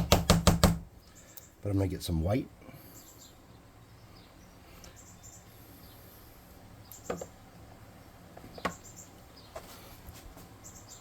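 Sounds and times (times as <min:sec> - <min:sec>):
faint high bird chirps: 0:01.0 - 0:01.7, 0:02.7 - 0:06.1, 0:08.0 - 0:09.6, 0:10.6 - 0:11.0.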